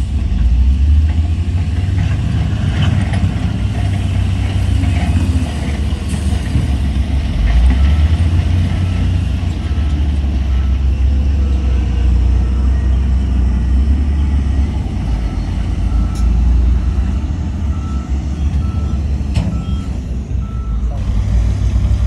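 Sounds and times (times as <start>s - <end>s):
diesel machine rumbling: 0.0s - 22.0s
reversing alarm beeps: 14.2s - 21.0s.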